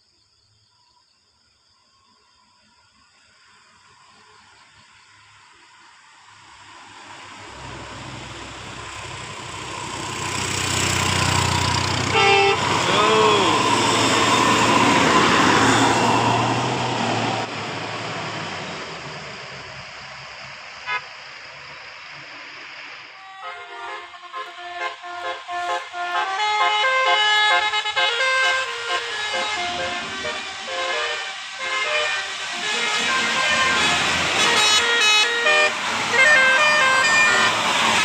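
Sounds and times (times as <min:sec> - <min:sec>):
bus engine and tyre noise: 0:02.4 - 0:38.0
bus horn toot: 0:11.5 - 0:14.1, 0:20.8 - 0:21.1, 0:23.3 - 0:38.0.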